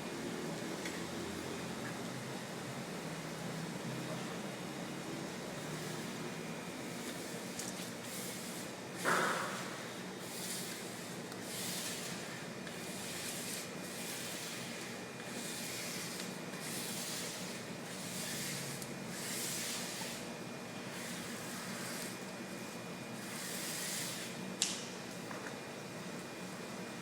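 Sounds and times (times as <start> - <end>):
steady low hum: 0.0 - 27.0
soft rubbing strokes: 6.8 - 8.8, 9.6 - 20.3, 20.9 - 24.4
short scrape: 8.1 - 20.2.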